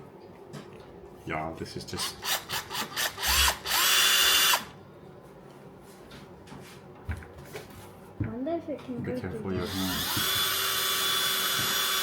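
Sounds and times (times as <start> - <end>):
cordless drill motor whining: 2.2 - 4.7, 9.6 - 12.0.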